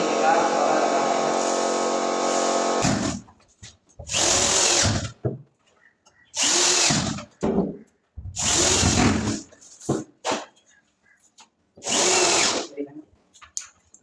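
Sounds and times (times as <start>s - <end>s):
power drill driving screws: 0.9s - 3.3s, 4.1s - 5.2s, 6.4s - 7.3s, 8.4s - 9.5s, 11.8s - 12.7s.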